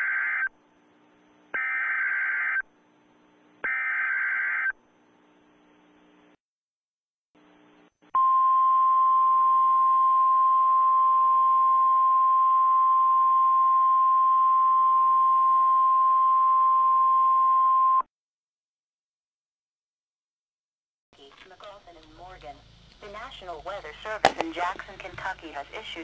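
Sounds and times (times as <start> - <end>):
faint radio hiss: 4.9 - 6.4, 7.4 - 7.9, 21.2 - 26.0.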